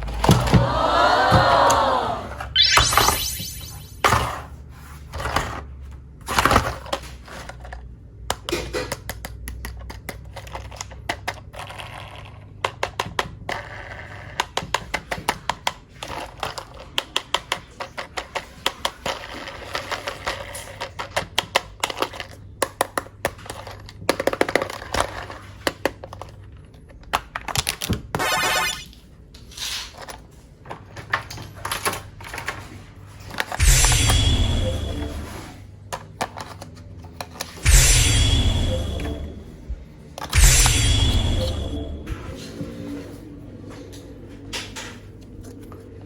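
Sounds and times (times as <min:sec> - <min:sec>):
low hum: 0:37.6 - 0:42.6.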